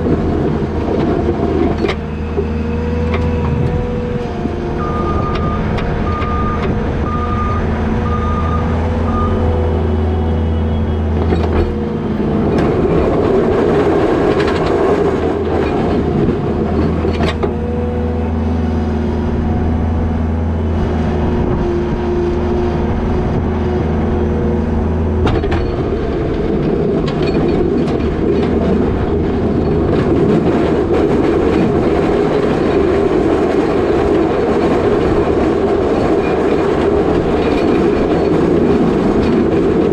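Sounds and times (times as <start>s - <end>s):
diesel engine running: 0.0s - 39.9s
backup alarm beeping: 4.8s - 9.6s.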